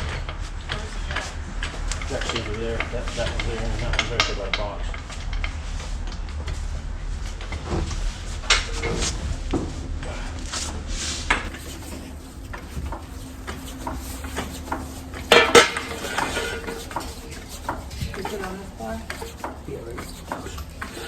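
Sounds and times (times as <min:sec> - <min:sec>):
steady low hum: 0:00.0 - 0:21.0
metal tools clinking and clanking: 0:11.5 - 0:21.0.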